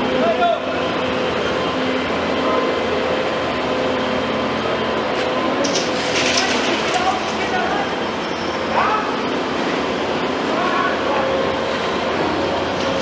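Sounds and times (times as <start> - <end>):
excavator engine humming: 0.0 - 13.0
scraping and clattering: 5.6 - 7.6.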